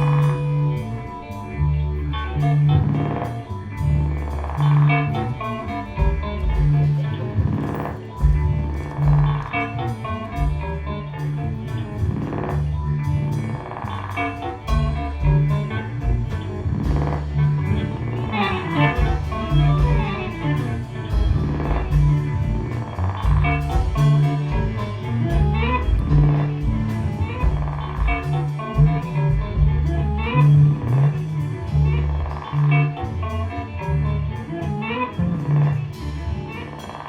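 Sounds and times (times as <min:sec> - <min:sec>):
drums with cymbal strokes: 0:00.0 - 0:37.0
guitar: 0:00.0 - 0:37.0
walking bass line: 0:00.0 - 0:37.0.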